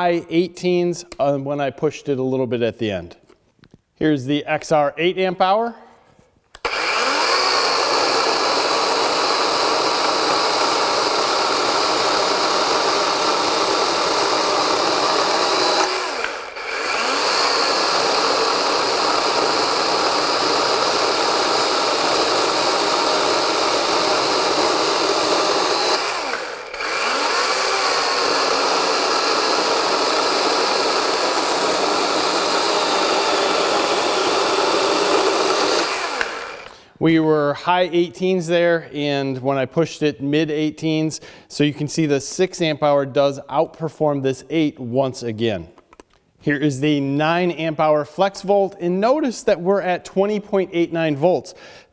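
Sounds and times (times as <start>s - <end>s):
cordless chainsaw cutting: 6.6s - 36.9s.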